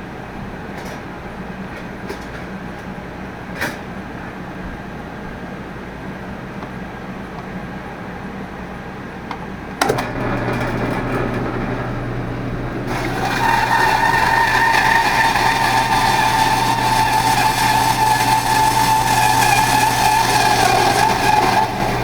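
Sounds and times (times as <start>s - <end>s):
electric drill starting up: 9.8s - 22.0s
drill bit grinding into metal: 9.9s - 22.0s.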